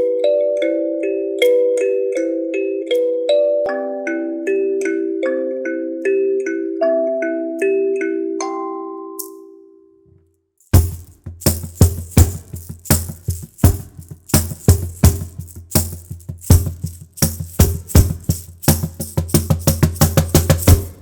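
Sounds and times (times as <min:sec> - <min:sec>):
shaker beads rattling: 0:10.6 - 0:21.0.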